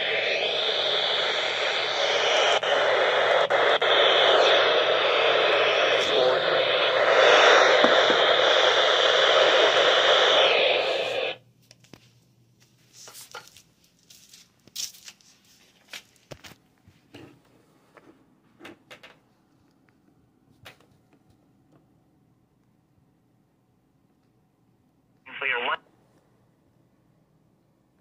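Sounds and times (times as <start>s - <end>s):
noisy radio receiver signal: 0.0s - 11.4s, 25.3s - 25.8s.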